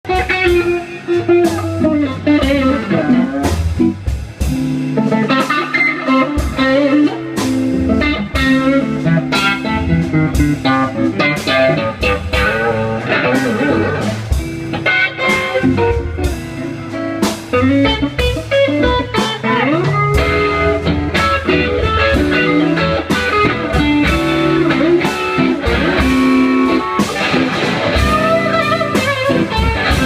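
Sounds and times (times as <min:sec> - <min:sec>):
bass: 0:00.0 - 0:30.0
drums steady beat: 0:00.0 - 0:30.0
electric guitar lines: 0:00.0 - 0:30.0.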